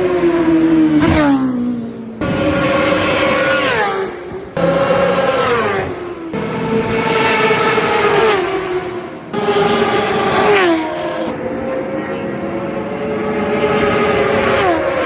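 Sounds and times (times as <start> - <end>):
racing motorcycles passing: 0.0 - 15.0.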